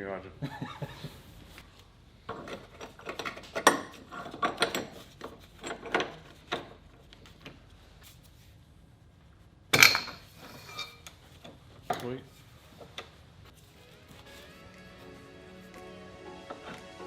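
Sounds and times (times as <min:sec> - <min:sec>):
tools and metal parts clanking: 0:02.3 - 0:07.6, 0:09.8 - 0:12.2.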